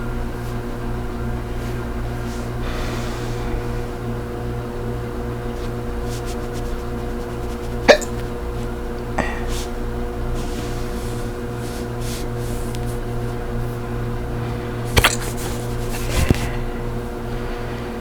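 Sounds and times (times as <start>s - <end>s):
low electrical hum: 0.0s - 18.0s
woman hiccuping: 7.9s - 8.2s.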